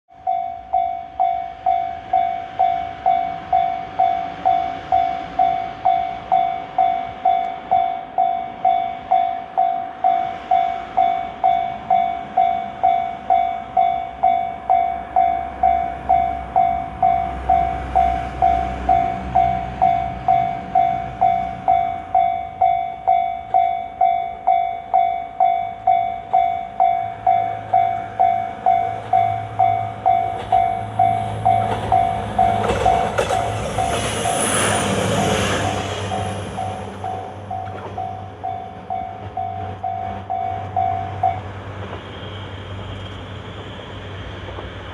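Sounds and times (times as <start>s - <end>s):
diesel railcar engine rumble: 0.1s - 44.9s
level crossing bell ringing: 0.2s - 34.0s
train wheel noise: 0.2s - 44.9s.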